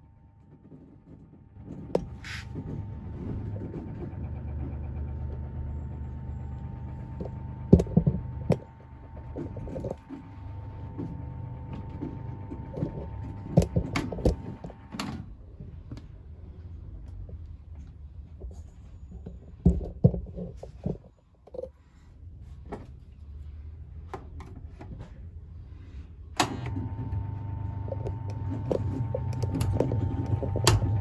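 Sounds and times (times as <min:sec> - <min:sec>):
tumble dryer motor hum: 0:00.0 - 0:16.2, 0:26.4 - 0:31.0.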